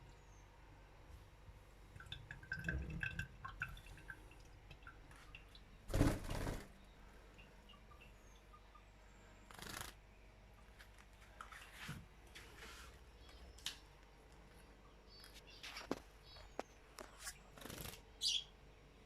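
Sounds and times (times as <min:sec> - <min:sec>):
lovebirds clicking and chirping: 0:02.0 - 0:11.5, 0:13.2 - 0:18.6.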